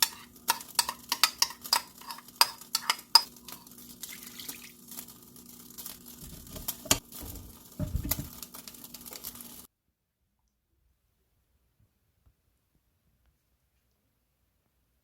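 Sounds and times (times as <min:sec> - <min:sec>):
light kitchen clicks and knocks: 0:06.2 - 0:08.5
heavier knocks: 0:07.2 - 0:08.4.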